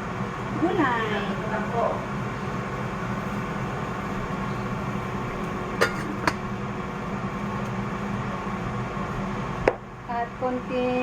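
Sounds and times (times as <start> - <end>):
kitchen appliance hum: 0.0 - 11.0
utensils clinking: 5.8 - 6.4.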